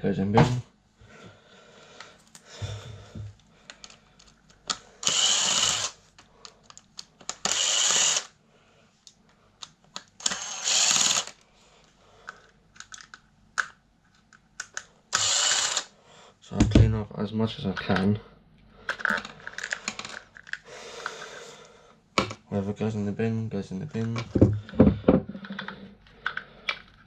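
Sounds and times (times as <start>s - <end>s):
rasping tool bursts: 5.0s - 6.0s, 7.4s - 8.3s, 10.2s - 11.4s, 15.1s - 15.9s
loose parts clicking and knocking: 18.9s - 21.2s, 23.9s - 27.0s.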